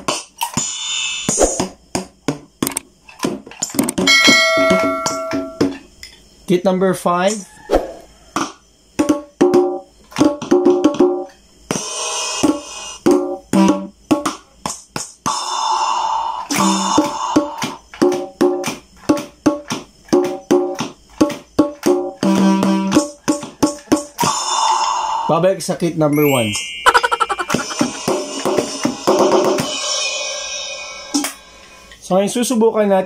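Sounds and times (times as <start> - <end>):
electronic drum pad hits: 4.0 - 5.8, 26.8 - 30.0.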